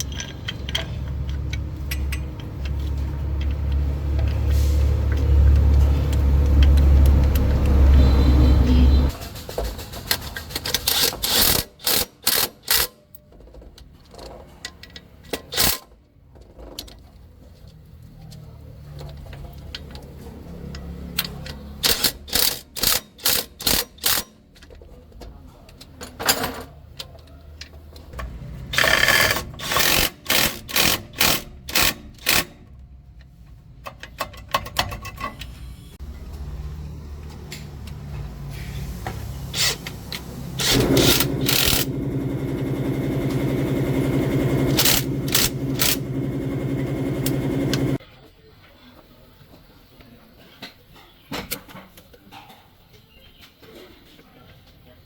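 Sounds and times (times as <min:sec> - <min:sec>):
sharp metal tool bursts: 0:21.8 - 0:24.3, 0:28.8 - 0:32.6, 0:39.5 - 0:41.9, 0:44.7 - 0:46.0.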